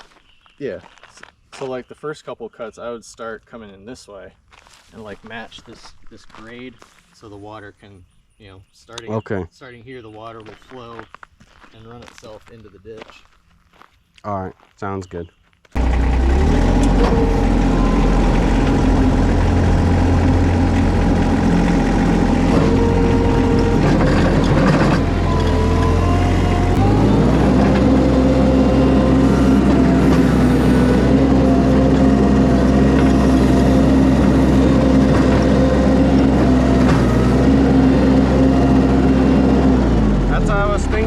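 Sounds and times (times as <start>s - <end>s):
skid steer engine running: 15.8s - 41.0s
whining tone sliding in pitch: 15.8s - 41.0s.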